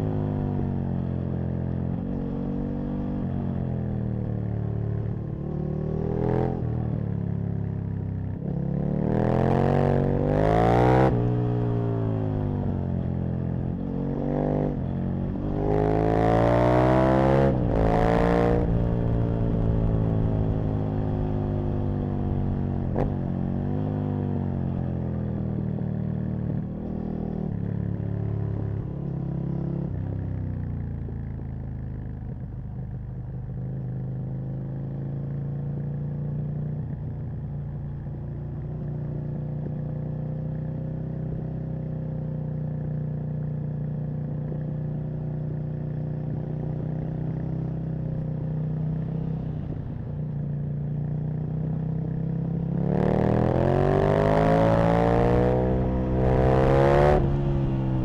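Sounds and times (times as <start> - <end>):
motorcycle engine revving: 32.0 - 58.0.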